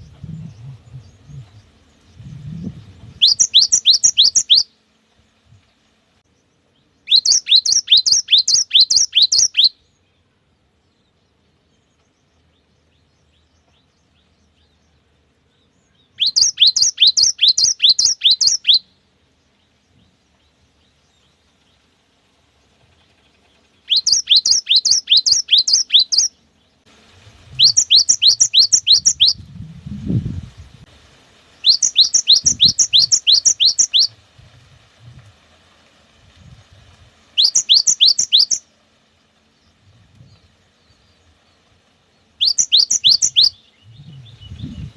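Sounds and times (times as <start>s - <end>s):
bird whistling song: 0.0s - 4.8s, 7.0s - 10.0s, 15.8s - 19.0s, 23.8s - 26.4s, 27.5s - 29.5s, 31.6s - 34.2s, 37.4s - 38.7s, 42.2s - 44.9s.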